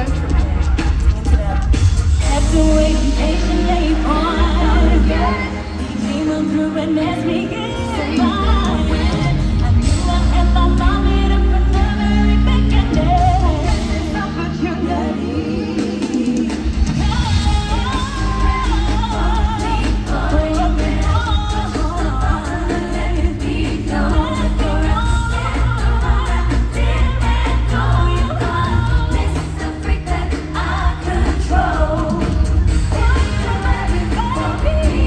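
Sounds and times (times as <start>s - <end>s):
heavy bass and drum beat: 0.0s - 5.5s, 15.6s - 35.0s
live pop song over sound system: 0.0s - 35.0s
woman singing: 0.0s - 35.0s.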